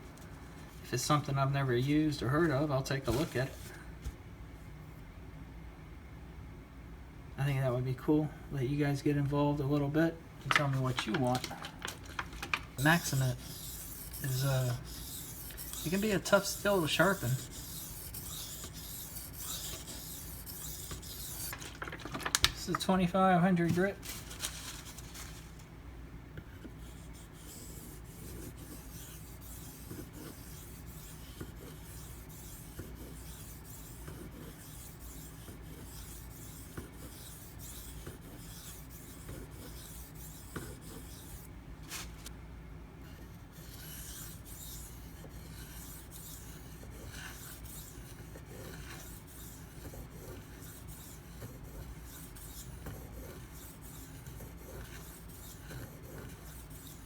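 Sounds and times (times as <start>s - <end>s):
blade scraping on sharpening stone: 12.8s - 21.4s.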